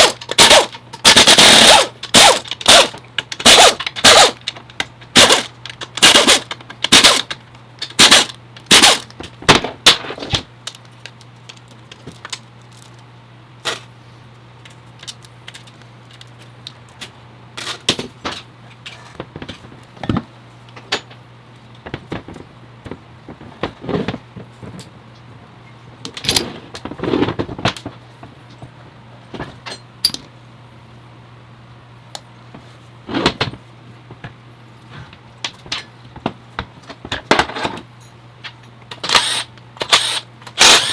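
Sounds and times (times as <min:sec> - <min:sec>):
steady low hum: 0:00.0 - 0:40.9
tools and parts clinking: 0:29.6 - 0:30.3.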